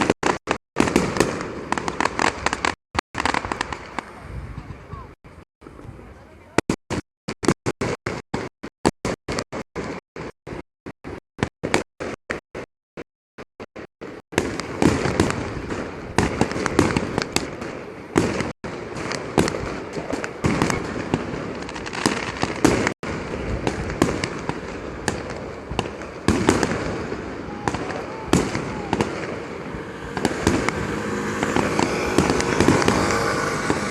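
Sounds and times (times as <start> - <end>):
firecrackers exploding: 0.0 - 4.8, 6.5 - 12.7, 13.8 - 33.9.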